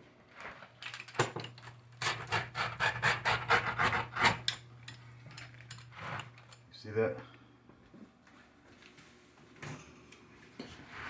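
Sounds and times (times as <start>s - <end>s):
faint steady hum: 0.0s - 11.0s
pizza cutter crunching crust: 2.0s - 4.5s.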